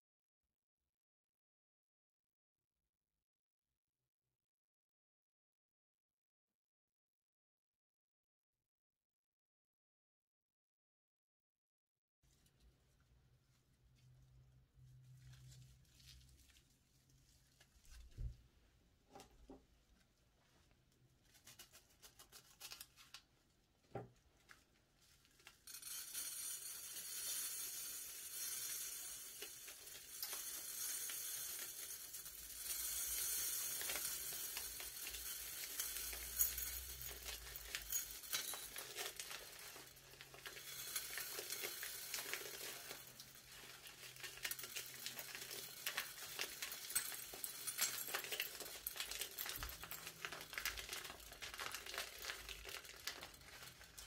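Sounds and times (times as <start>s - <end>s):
slime being stirred by hand: 12.3s - 18.6s, 19.6s - 25.6s, 38.6s - 54.0s.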